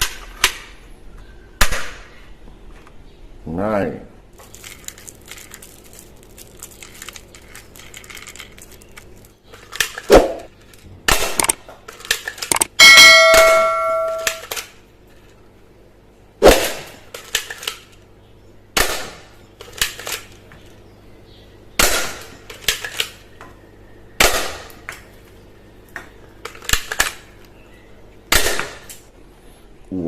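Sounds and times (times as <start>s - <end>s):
toy gun cracks: 6.4s - 12.7s, 18.8s - 20.4s, 21.8s - 23.2s, 26.4s - 27.3s
brief ringing tone: 12.8s - 14.4s.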